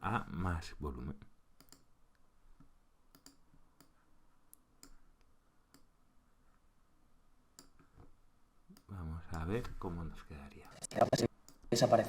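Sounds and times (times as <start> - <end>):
faint computer mouse clicks: 1.6 - 1.9, 3.1 - 5.0.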